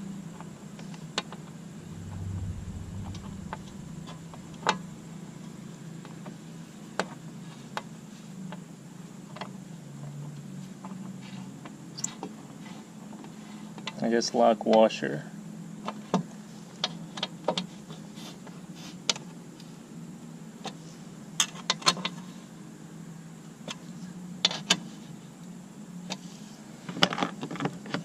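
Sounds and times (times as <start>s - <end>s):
low steady hum: 1.7s - 5.8s.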